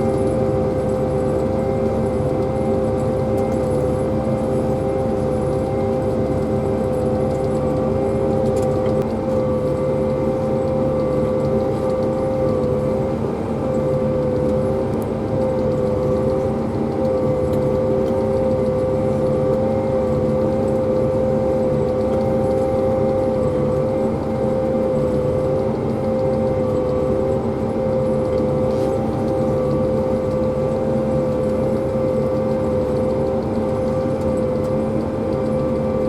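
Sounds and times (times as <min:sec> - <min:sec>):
engine drone with high whine: 0:00.0 - 0:36.0.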